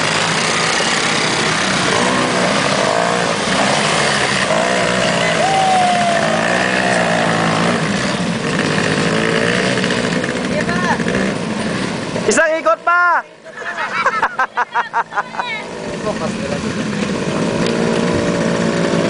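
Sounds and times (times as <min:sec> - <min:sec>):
atv engine revving: 0:00.0 - 0:19.0.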